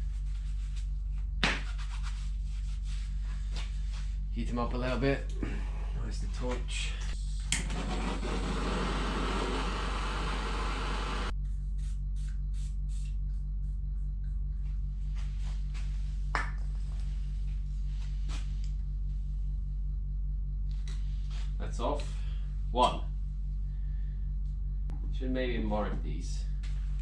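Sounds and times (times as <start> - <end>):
low hum: 2.4 - 27.0
gas torch lighting click: 7.4 - 11.3
torch flame hissing: 7.6 - 11.3.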